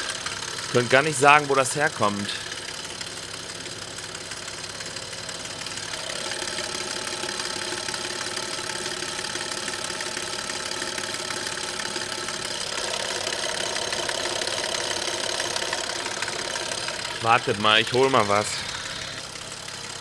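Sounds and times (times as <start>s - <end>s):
fast metallic engine clatter: 0.0s - 17.2s
car engine running: 12.5s - 20.0s.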